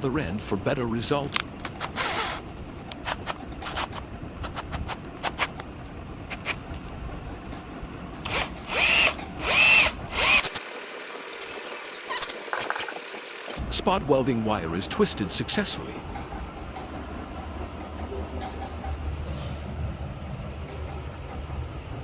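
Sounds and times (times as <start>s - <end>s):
clicks and handling knocks: 1.2s - 8.3s
electric drill motor whine: 1.6s - 4.0s, 8.2s - 13.6s.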